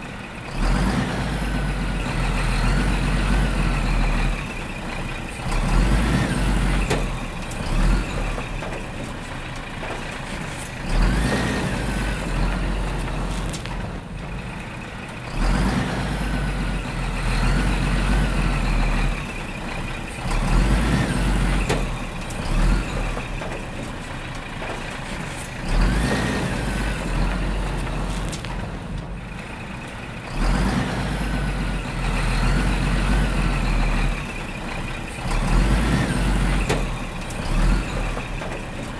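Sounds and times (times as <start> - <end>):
heavy truck engine: 0.0 - 38.9.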